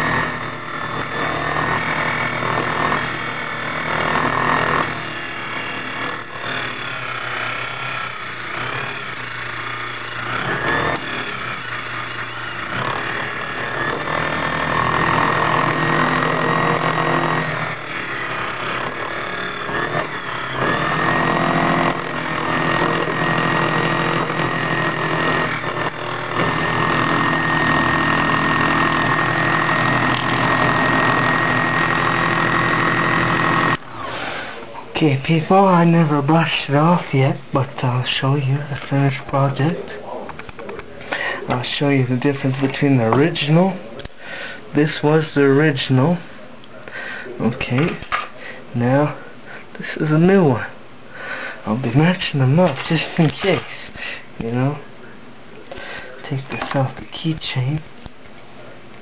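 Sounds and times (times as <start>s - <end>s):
key cutting machine grinding: 0.0s - 34.3s, 41.0s - 43.9s, 47.4s - 49.3s, 51.5s - 54.8s.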